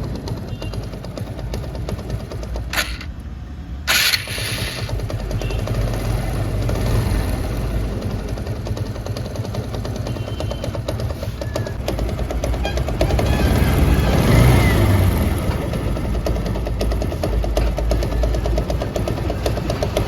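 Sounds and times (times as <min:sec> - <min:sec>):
engine rattling: 0:00.0 - 0:20.0
motorcycle engine idling: 0:07.9 - 0:12.4.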